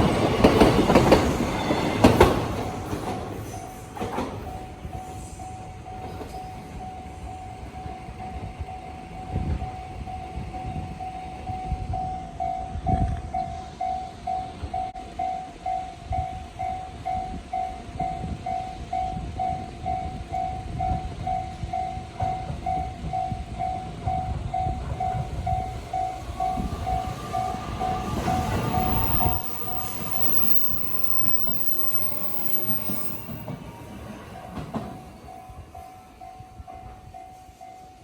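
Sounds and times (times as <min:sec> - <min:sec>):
approaching train whine: 0:23.7 - 0:36.3
level-crossing alarm bell ringing: 0:24.1 - 0:33.6.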